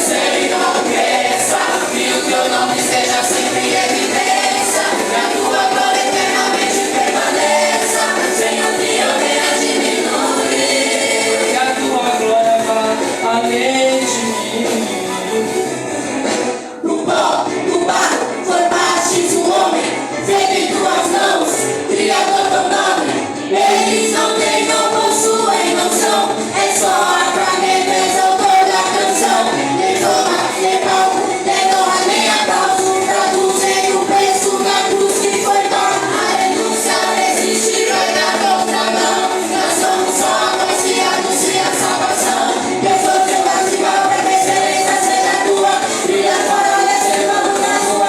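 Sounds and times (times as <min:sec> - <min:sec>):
choir singing in harmony: 0:00.0 - 0:48.0.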